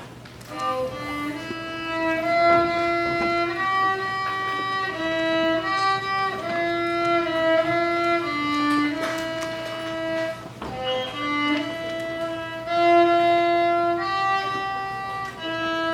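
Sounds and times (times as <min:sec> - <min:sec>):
solo violin slow melody: 0:00.4 - 0:15.9.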